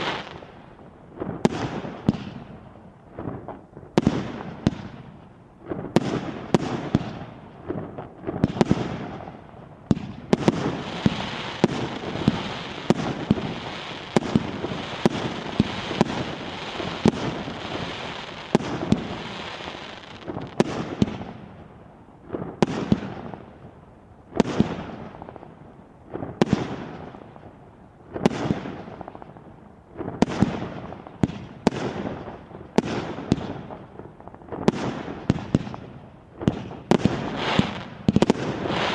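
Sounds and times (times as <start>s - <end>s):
firework bangs: 0.0s - 0.5s, 1.2s - 2.6s, 3.2s - 21.5s, 24.3s - 25.3s, 36.4s - 38.9s
firework crackling: 0.0s - 21.5s, 30.0s - 38.9s.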